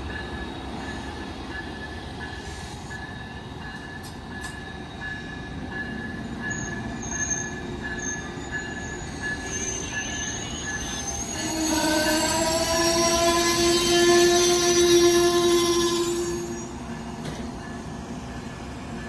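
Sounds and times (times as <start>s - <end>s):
diesel train approaching: 0.0s - 19.0s
wheel squeal: 6.5s - 12.3s.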